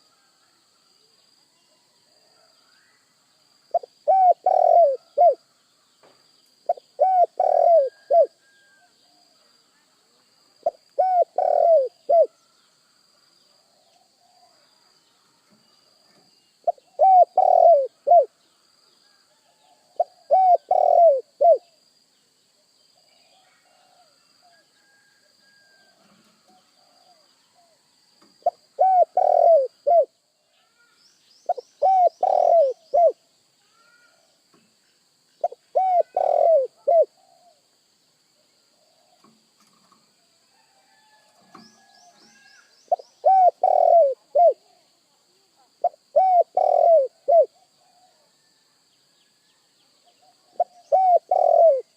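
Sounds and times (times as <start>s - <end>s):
dove cooing: 3.7s - 5.4s, 6.7s - 8.9s, 10.6s - 12.4s, 16.6s - 18.4s, 19.4s - 21.7s, 28.4s - 30.1s, 31.5s - 33.2s, 35.4s - 37.6s, 42.3s - 44.9s, 45.8s - 48.3s, 50.2s - 51.9s.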